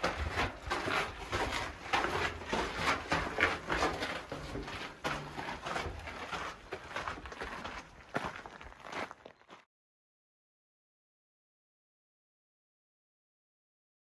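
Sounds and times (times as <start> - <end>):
footsteps crunching on trail: 0.0 - 9.6.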